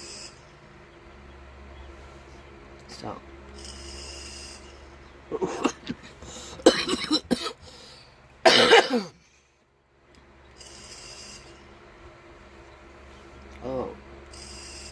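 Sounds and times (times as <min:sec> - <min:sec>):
woman coughing: 0:05.3 - 0:06.0, 0:06.6 - 0:07.6, 0:08.4 - 0:09.2
throat clearing: 0:05.3 - 0:07.6.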